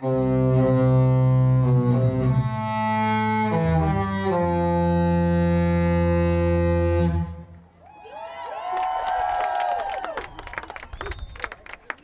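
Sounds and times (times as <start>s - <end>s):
ship's horn playing a tune: 0.0s - 7.6s.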